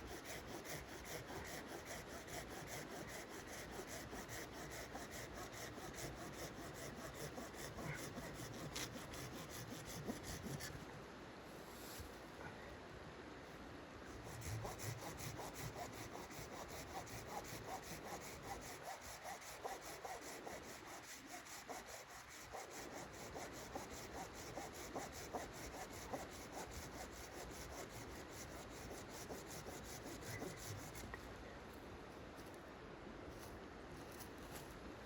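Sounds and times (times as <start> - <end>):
hand saw cutting wood: 0.0 - 10.7, 14.2 - 31.0.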